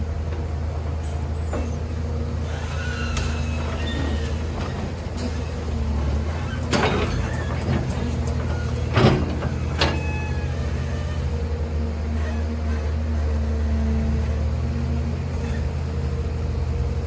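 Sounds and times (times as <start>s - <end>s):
heavy machine engine humming: 0.0s - 17.0s.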